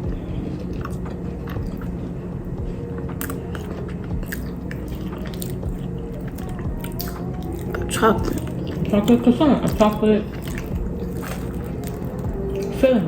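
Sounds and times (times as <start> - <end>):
chewing and biting pastry: 0.0 - 13.0
steady low hum: 0.0 - 13.0
wet mouth clicks: 3.2 - 12.8.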